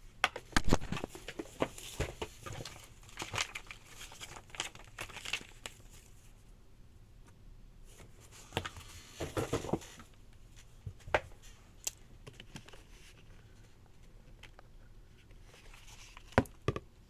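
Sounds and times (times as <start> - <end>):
packaging rustling: 0.5 - 6.0.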